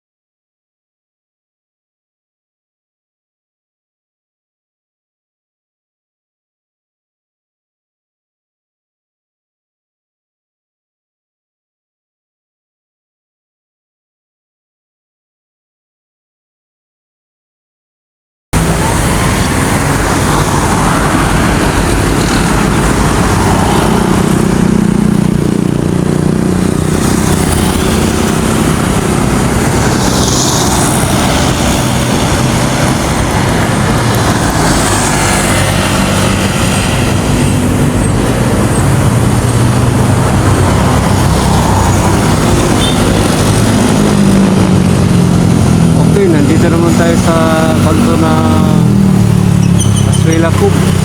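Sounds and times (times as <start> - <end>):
road traffic noise: 18.6 - 51.0
vehicle engine hum: 18.6 - 51.0.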